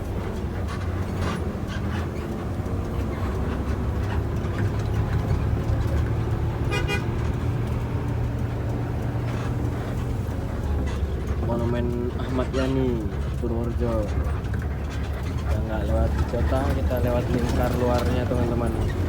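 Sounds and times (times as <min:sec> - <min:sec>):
bus engine and road hum: 0:00.0 - 0:19.0.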